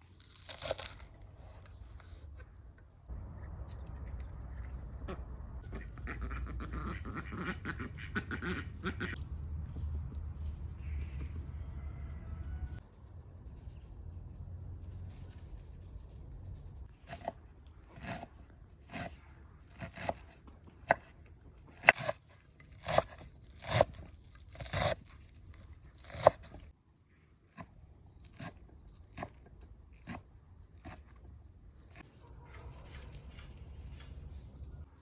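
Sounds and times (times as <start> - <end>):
crisp cutting and tearing food: 0.0 - 2.4, 16.8 - 26.7, 27.5 - 31.2.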